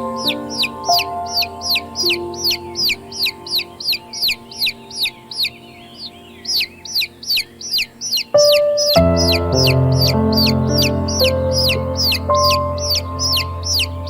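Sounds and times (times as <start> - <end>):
baby chicks peeping: 0.0 - 14.0
soft sustained music: 0.0 - 14.0.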